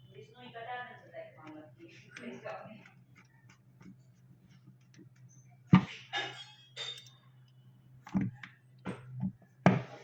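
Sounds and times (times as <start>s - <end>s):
metallic clinks and knocks: 5.8s - 8.4s.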